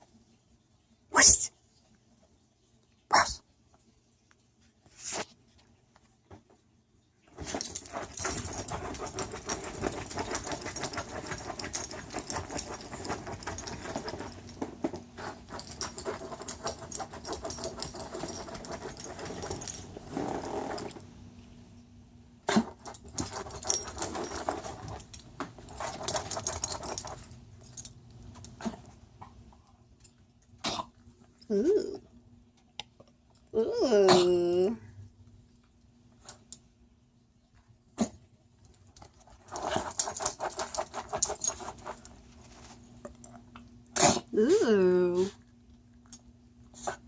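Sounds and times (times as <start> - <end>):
dog collar tags jingling: 7.4 - 20.0, 22.9 - 28.5, 39.5 - 42.2.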